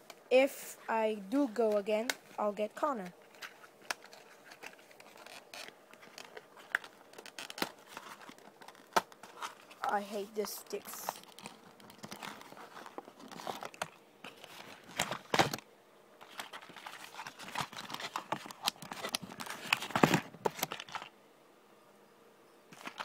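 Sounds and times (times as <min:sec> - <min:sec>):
plastic and cardboard crinkling: 0:01.3 - 0:15.6, 0:16.2 - 0:21.1, 0:22.7 - 0:23.0
packaging ripping: 0:03.2 - 0:09.9, 0:10.8 - 0:15.6, 0:16.2 - 0:21.1, 0:22.7 - 0:23.0.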